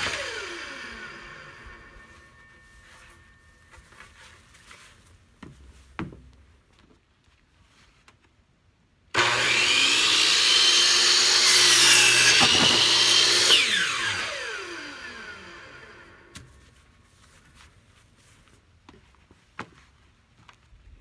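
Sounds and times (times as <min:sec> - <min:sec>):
electric saw cutting lumber: 0:00.0 - 0:02.4, 0:09.2 - 0:16.4.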